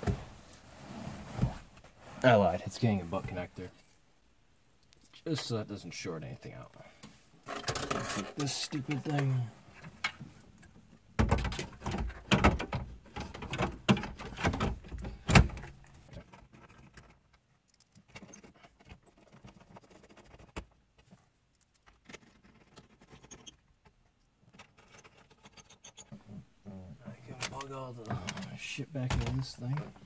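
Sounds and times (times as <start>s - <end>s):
clicking and rattling handling noise: 7.0s - 26.3s.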